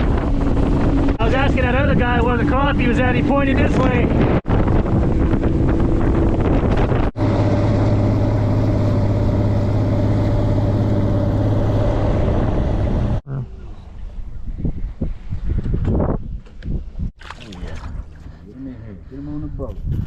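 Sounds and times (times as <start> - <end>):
vehicle motor humming: 5.2 - 13.2.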